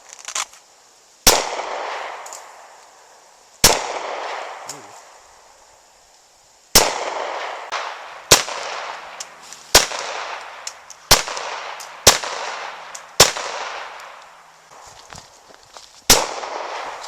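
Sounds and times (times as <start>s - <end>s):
gunshots with long echo: 1.2s - 2.7s, 3.6s - 4.9s, 6.7s - 14.2s, 16.1s - 17.0s.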